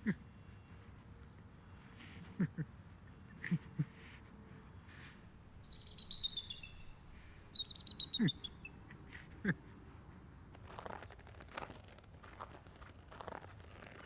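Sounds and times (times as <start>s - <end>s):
songbird chirping: 4.5s - 9.2s.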